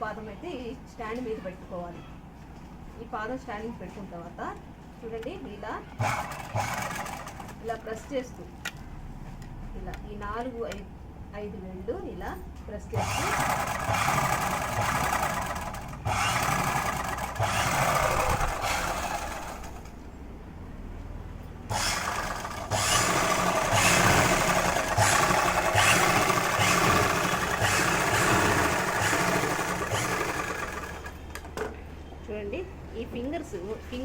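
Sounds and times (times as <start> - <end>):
sewing machine motor running: 6.0 - 7.7, 13.0 - 19.9, 21.7 - 31.6.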